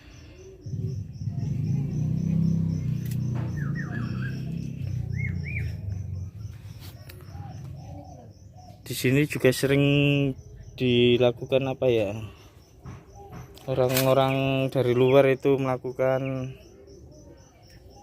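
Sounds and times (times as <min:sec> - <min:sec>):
insect pulsing: 0:00.0 - 0:08.0
small birds chirping: 0:00.0 - 0:18.0
low rumble: 0:00.6 - 0:07.6.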